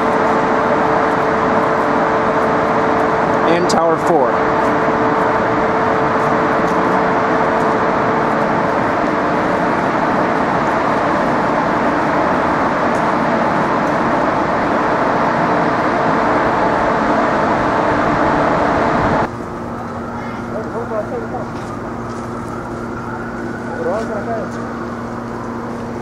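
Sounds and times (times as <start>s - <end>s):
city traffic roar: 0.0s - 26.0s.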